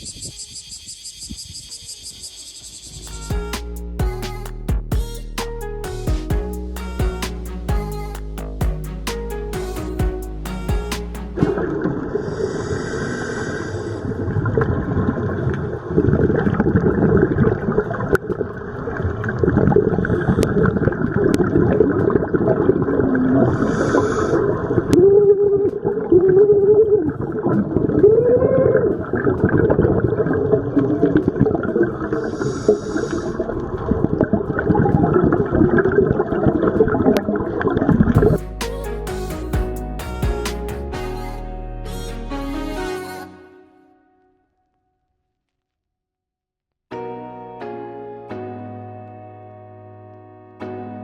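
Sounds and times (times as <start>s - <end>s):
underwater rumbling and bubbling: 13.7s - 38.4s
scuba regulator breaths hissing: 23.6s - 24.5s.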